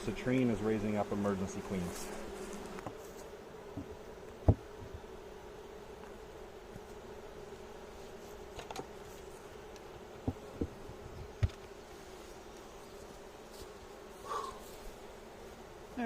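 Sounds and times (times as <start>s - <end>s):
honeybees buzzing: 0.0s - 16.0s
sharp knocks: 3.8s - 4.9s.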